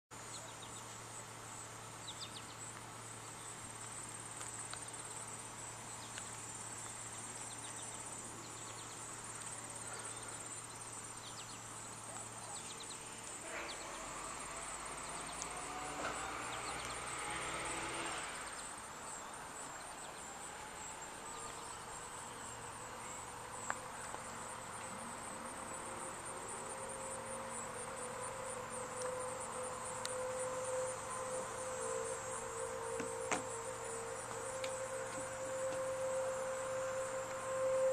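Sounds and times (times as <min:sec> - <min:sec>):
high insect chorus: 0:00.2 - 0:37.9
distant warning siren winding up: 0:13.0 - 0:18.8, 0:20.0 - 0:37.9
vehicle passing: 0:13.3 - 0:19.2.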